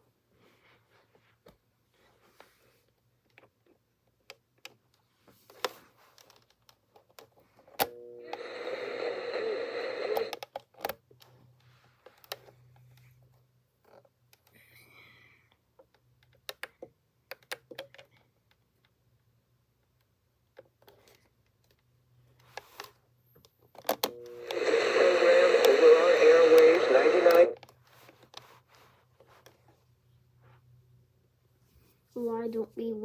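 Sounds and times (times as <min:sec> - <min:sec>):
burst of radio sound: 0:24.1 - 0:27.6.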